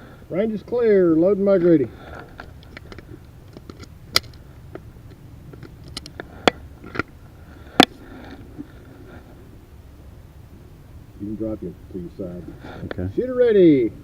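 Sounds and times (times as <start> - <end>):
revolver metallic clicks and rattles: 2.2 - 7.1.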